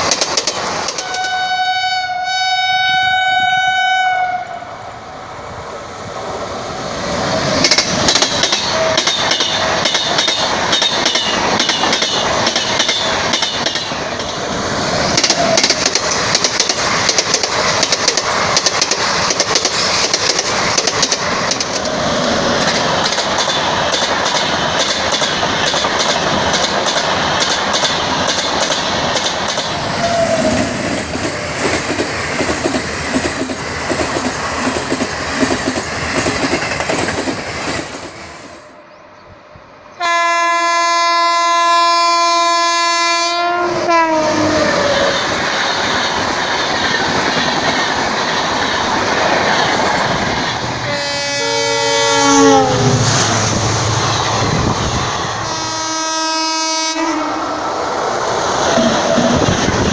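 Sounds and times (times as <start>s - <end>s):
train wheels clattering on track: 0.0s - 1.4s, 7.4s - 38.8s, 45.3s - 50.7s
locomotive air horn blast: 1.0s - 4.7s, 40.0s - 44.6s, 50.9s - 52.9s, 55.4s - 57.4s
train rumble: 6.0s - 38.8s, 57.4s - 59.9s.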